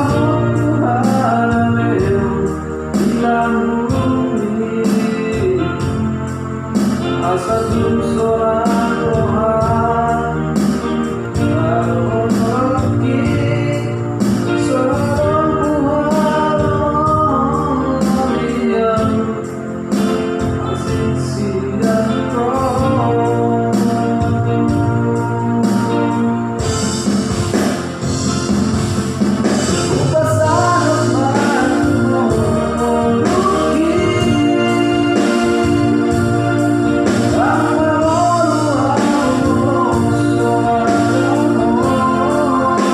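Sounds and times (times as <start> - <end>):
steady drum beat: 0.0 - 18.3, 21.8 - 42.9
person singing: 0.0 - 28.4, 29.4 - 42.9
electronic keyboard chords: 0.0 - 42.9
drum machine beat: 26.6 - 42.9.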